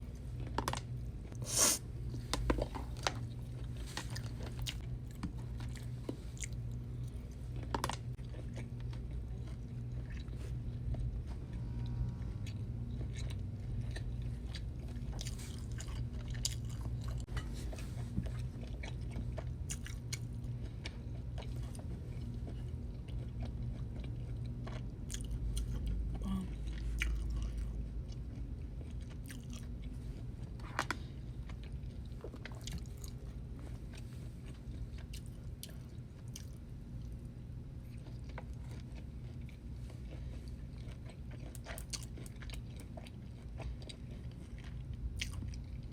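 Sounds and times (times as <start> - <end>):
steady low hum: 0.0 - 45.9
chewing steak: 0.2 - 45.9.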